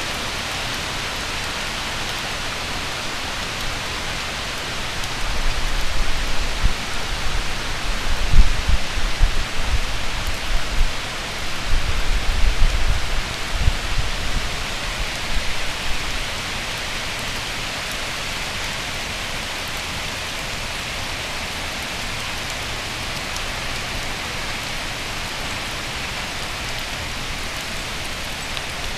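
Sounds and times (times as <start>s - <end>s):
heavy rain hissing: 0.0s - 28.9s
wind buffeting microphone: 4.8s - 16.2s.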